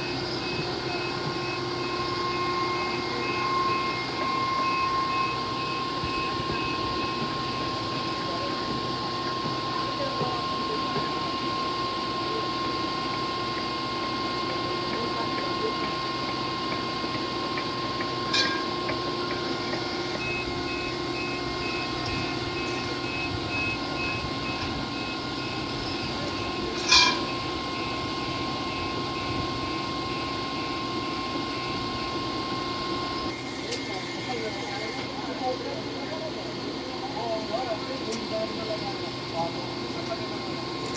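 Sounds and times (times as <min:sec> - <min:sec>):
faint high beeps: 0:00.0 - 0:08.2
sharp squeaks or clanks: 0:26.8 - 0:27.4.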